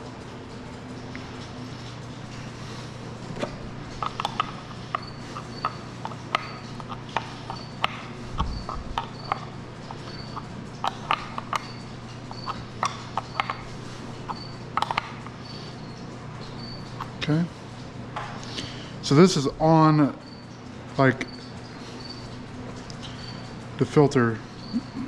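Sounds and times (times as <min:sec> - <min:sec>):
steady low hum: 0:00.0 - 0:25.0
plumbing fittings clicking: 0:03.3 - 0:17.2.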